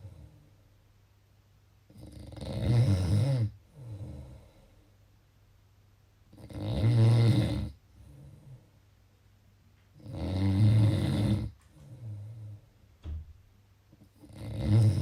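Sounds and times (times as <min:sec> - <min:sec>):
loud snores: 0:01.9 - 0:04.7, 0:06.3 - 0:08.6, 0:10.0 - 0:12.6, 0:14.2 - 0:15.0.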